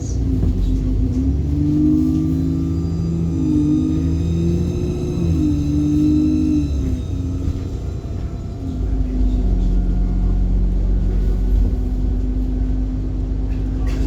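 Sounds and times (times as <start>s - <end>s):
bus engine rumble: 0.0s - 14.0s.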